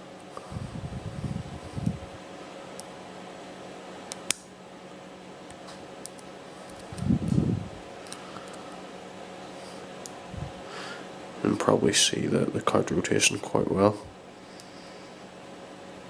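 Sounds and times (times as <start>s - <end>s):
steady background hum: 0.0s - 16.0s
low voice hum: 0.4s - 2.2s, 6.8s - 8.4s, 9.7s - 14.8s.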